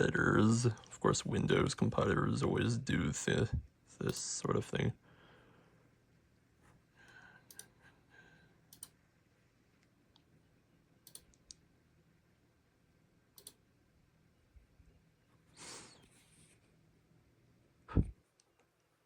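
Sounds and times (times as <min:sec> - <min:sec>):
low steady hum: 0:00.0 - 0:19.0
computer mouse clicks: 0:07.5 - 0:07.7, 0:08.7 - 0:09.0, 0:11.0 - 0:11.6, 0:13.4 - 0:13.6.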